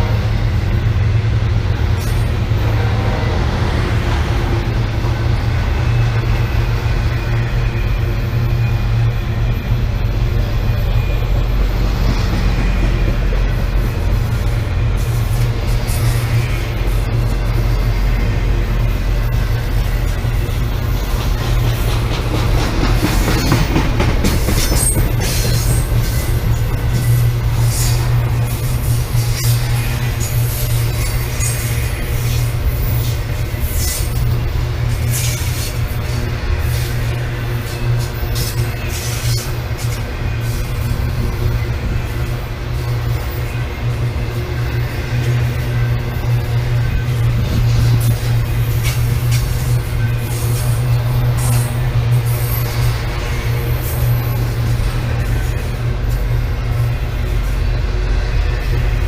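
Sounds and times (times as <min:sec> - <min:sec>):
freight train rumbling past: 0:00.0 - 0:59.0
high wheel squeal: 0:01.9 - 0:59.0.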